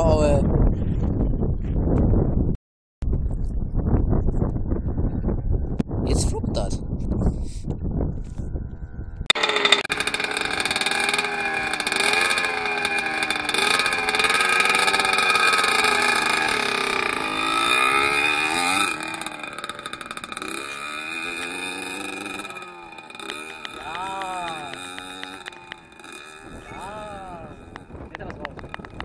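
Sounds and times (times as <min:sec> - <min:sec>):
two-stroke motorcycle engine revving: 0:09.3 - 0:29.0.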